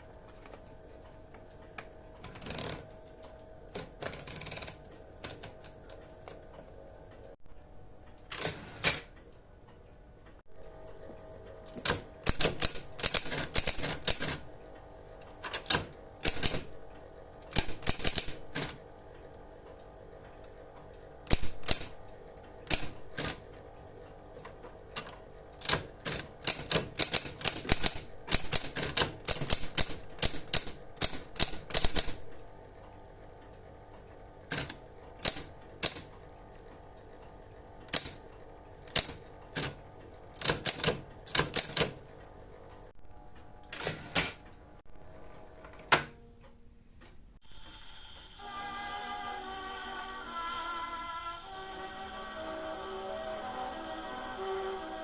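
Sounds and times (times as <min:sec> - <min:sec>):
typewriter motor hum: 0:02.1 - 0:06.6, 0:08.2 - 0:09.2, 0:10.6 - 0:43.0, 0:43.6 - 0:44.5
typewriter key strikes: 0:11.7 - 0:14.4, 0:15.4 - 0:16.7, 0:17.5 - 0:18.8, 0:21.2 - 0:22.0, 0:22.6 - 0:23.5, 0:25.0 - 0:32.3, 0:34.5 - 0:36.1, 0:38.9 - 0:39.8, 0:40.4 - 0:42.0.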